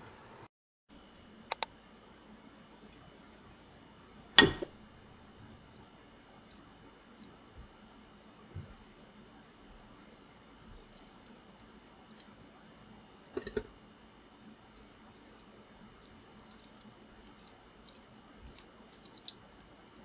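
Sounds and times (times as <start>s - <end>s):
small clicks and taps: 1.5s - 1.7s.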